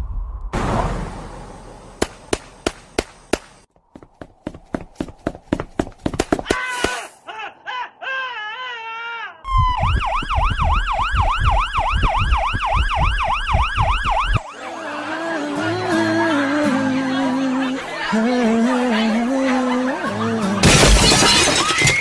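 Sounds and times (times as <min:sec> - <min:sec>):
yelp siren wailing: 0:09.5 - 0:19.3.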